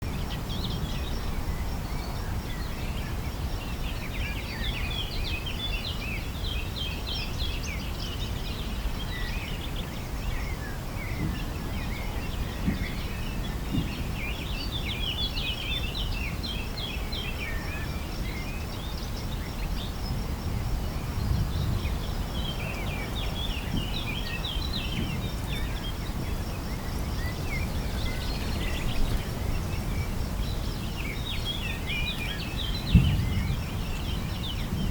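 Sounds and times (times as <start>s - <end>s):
blackbird singing: 22.6s - 34.7s.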